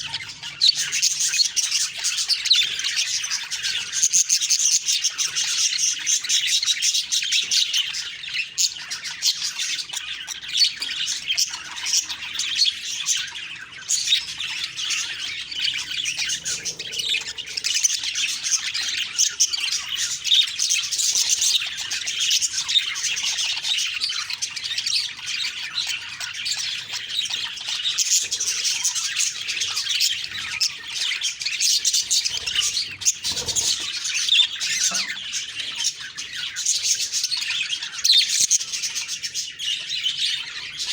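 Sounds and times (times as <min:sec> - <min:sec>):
budgies chattering and squawking: 0:00.0 - 0:40.9.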